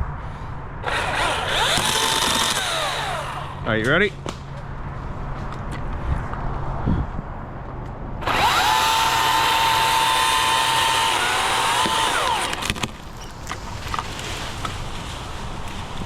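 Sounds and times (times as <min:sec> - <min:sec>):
electric chainsaw cutting wood: 0:00.8 - 0:03.7, 0:08.2 - 0:13.1.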